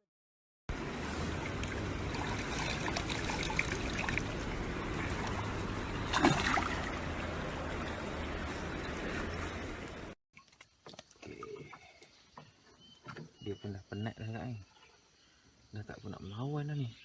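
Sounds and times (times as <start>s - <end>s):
water splash: 0.7s - 8.5s
flowing water rushing: 0.7s - 10.2s
low hum: 0.7s - 10.2s.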